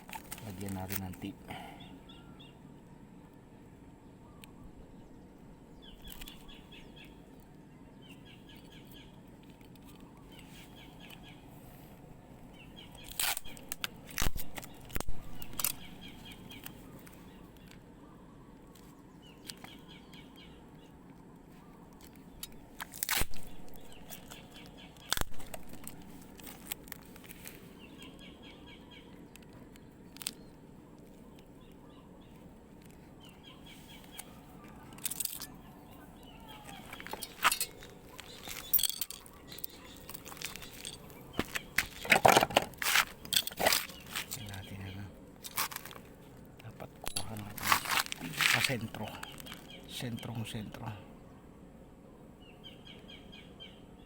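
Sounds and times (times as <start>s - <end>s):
clicks and knocks of handled parts: 0.0s - 1.3s, 12.9s - 17.8s, 21.9s - 27.6s, 34.0s - 35.6s, 36.6s - 44.6s, 45.4s - 49.7s
small bird chirping: 4.3s - 42.2s, 42.8s - 51.0s.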